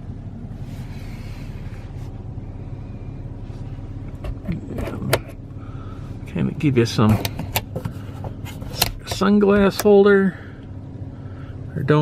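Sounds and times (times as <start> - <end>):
car engine idling: 0.0 - 12.0
dash control clicks: 8.7 - 10.1.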